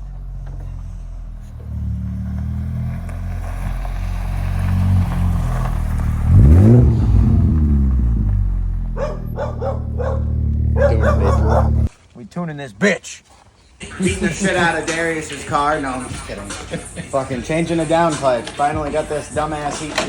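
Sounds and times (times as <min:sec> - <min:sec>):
car engine running: 0:00.0 - 0:11.9.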